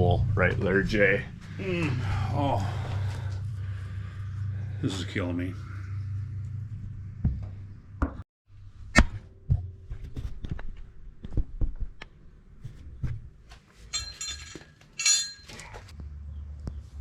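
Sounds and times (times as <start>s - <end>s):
metallic jingling rattles: 13.8s - 15.9s.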